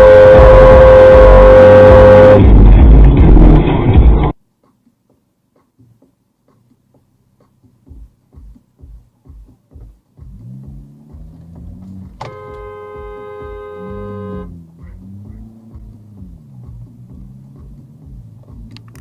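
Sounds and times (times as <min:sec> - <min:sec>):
car horn blast: 0:00.0 - 0:02.5, 0:12.2 - 0:14.6
road and engine noise: 0:00.0 - 0:19.0.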